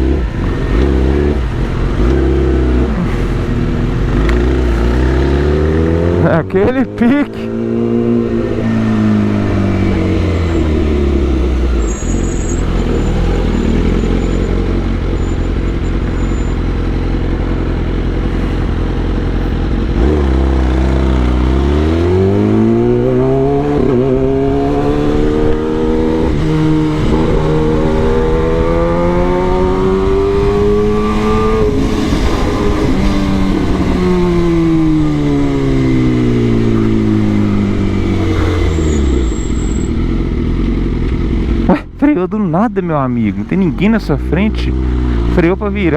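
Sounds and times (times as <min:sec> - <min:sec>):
motorcycle engine revving: 0:00.0 - 0:45.9
wind noise: 0:22.1 - 0:40.4.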